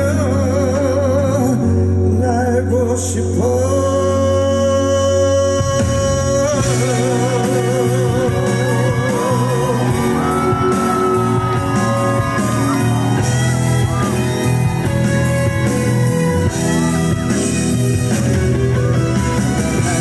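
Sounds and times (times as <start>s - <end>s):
live rock band playing: 0.0s - 20.0s
electric guitar lead lines: 6.6s - 20.0s.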